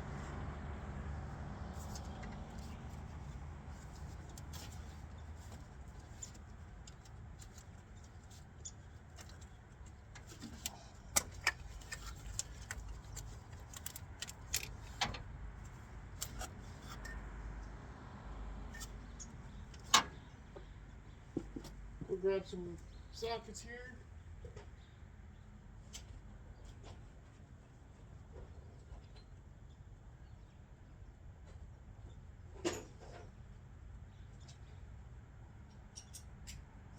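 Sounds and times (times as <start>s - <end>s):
light metallic clicks and clinks: 35.7s - 36.7s.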